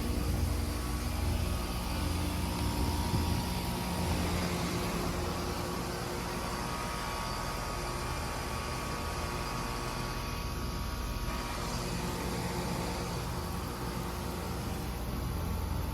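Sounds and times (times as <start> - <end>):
air conditioner unit humming: 0.0 - 15.9.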